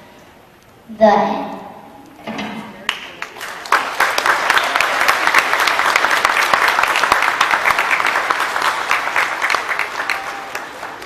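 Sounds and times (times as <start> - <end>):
audience applauding: 2.9 - 11.0.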